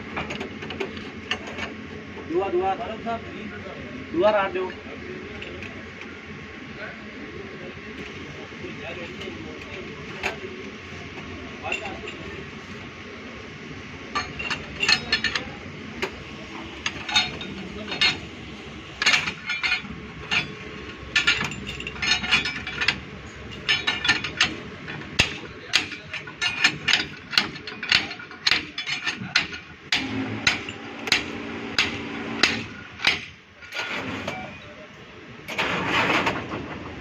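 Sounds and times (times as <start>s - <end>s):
low steady hum: 0.0s - 36.8s
sharp metallic knocks: 19.0s - 33.4s.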